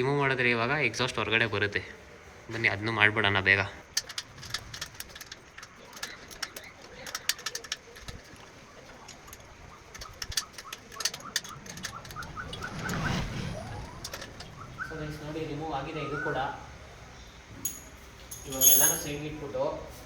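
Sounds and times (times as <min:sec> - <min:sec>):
spanner clicking on metal: 0:03.9 - 0:12.2, 0:17.7 - 0:19.2
bolt squeaking free: 0:03.9 - 0:12.4, 0:17.6 - 0:19.2.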